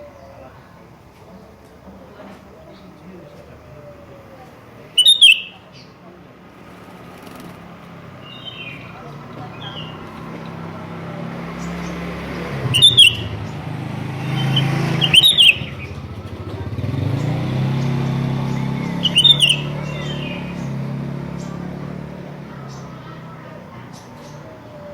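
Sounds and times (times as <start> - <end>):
passing motor vehicles hum: 0.0 - 24.9
bird call phrases: 2.4 - 6.2, 8.0 - 24.9
faint bird chirps: 2.6 - 6.0, 8.2 - 13.6, 14.2 - 16.2, 17.0 - 21.8.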